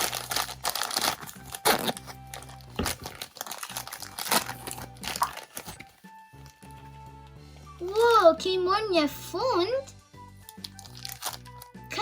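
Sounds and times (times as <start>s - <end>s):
toy packaging crinkling and tearing: 0.0s - 6.6s, 10.4s - 11.9s
faint background music: 0.0s - 12.0s.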